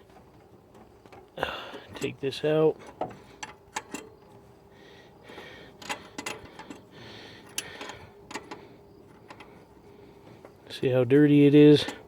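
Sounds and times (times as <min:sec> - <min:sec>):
heavy breathing: 0:01.4 - 0:02.0, 0:04.6 - 0:10.6.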